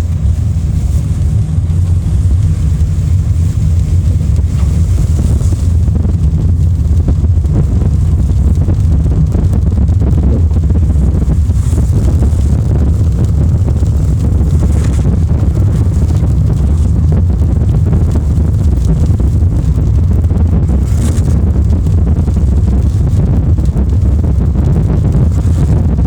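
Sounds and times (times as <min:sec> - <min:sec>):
car engine and road rumble: 0:00.0 - 0:26.0
rain and tyres washing: 0:00.0 - 0:26.0.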